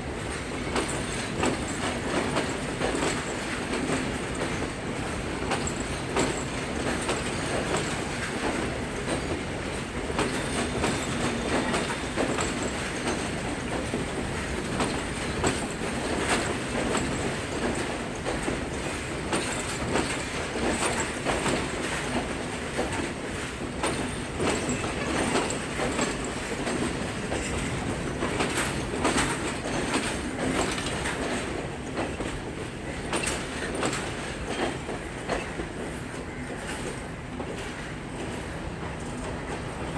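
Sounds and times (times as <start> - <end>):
train rumble: 0.0 - 39.9
train wheels clicking on rails: 0.0 - 39.9.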